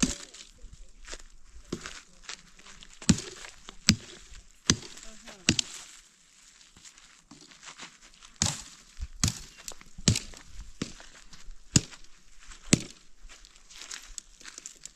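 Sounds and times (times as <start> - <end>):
chopping blows into wood: 3.0 - 5.8, 8.4 - 11.1, 11.7 - 12.1, 12.7 - 13.0.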